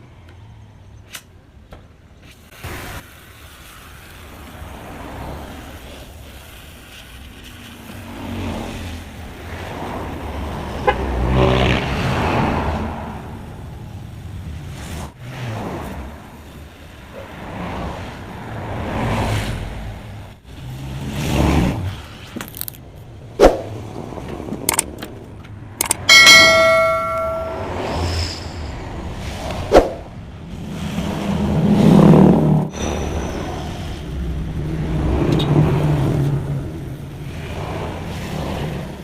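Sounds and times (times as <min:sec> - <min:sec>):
road vehicles passing: 0:00.0 - 0:39.0
sharp metal knocks: 0:25.8 - 0:28.8
struck metal clang ringing: 0:26.0 - 0:28.8.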